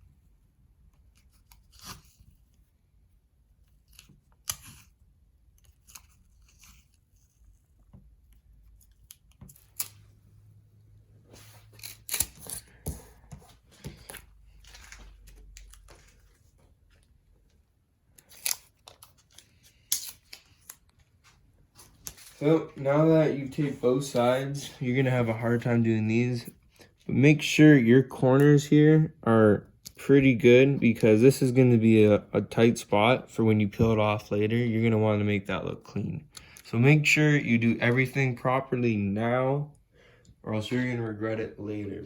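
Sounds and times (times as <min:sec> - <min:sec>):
tape being pulled and torn: 0:01.0 - 0:02.7, 0:03.7 - 0:10.2, 0:11.3 - 0:17.1, 0:18.1 - 0:21.1.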